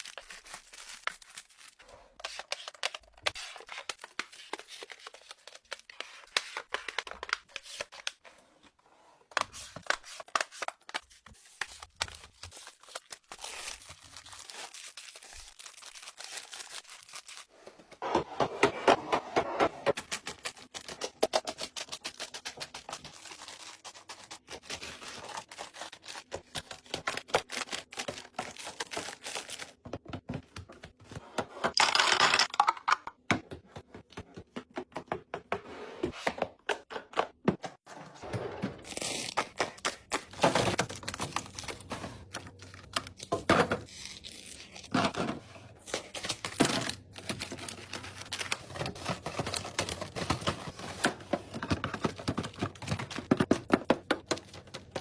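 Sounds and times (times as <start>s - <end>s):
packaging crinkling or tearing: 0.0s - 1.8s, 9.7s - 17.5s, 38.8s - 45.1s, 45.8s - 51.1s.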